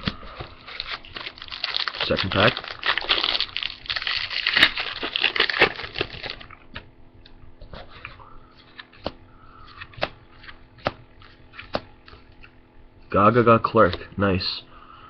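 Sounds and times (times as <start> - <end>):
foil wrapper crinkling: 0.0 - 6.7
cards clicking and tapping: 8.8 - 12.5.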